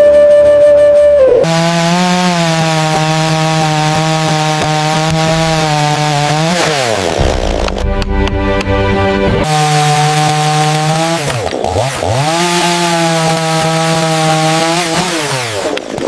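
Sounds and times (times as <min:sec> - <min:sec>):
chainsaw running at high revs: 0:01.4 - 0:07.4, 0:09.4 - 0:16.0.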